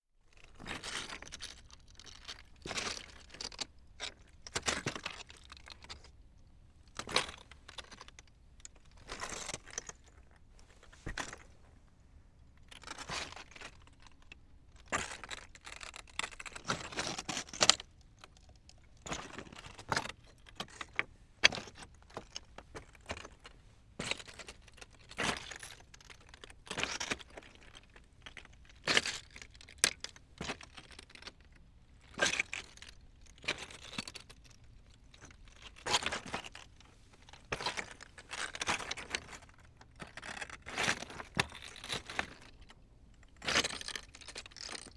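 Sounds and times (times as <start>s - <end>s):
footsteps crunching on loose rocks: 10.6s - 11.6s.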